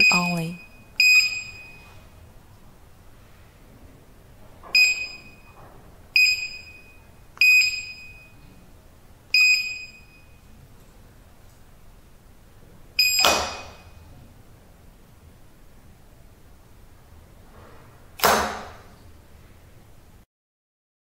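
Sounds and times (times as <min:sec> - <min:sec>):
keypad beeps: 0:00.0 - 0:01.9, 0:04.8 - 0:05.6, 0:06.2 - 0:08.4, 0:09.3 - 0:10.4, 0:13.0 - 0:13.9.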